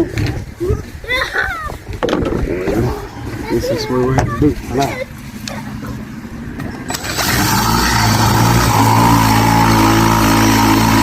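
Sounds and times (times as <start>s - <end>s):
motor humming: 2.8s - 11.0s.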